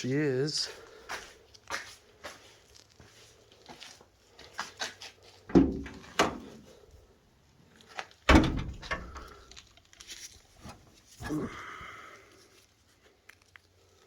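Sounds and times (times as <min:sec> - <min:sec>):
heavy thuds: 0:05.5 - 0:06.6, 0:08.3 - 0:09.4.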